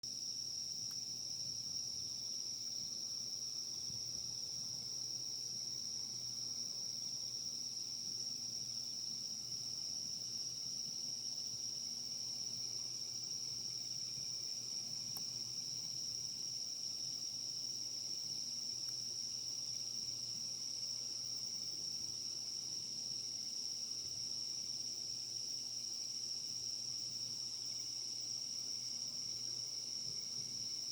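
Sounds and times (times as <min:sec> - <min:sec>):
insects trilling: 0:00.1 - 0:30.9
faint click: 0:15.1 - 0:15.3.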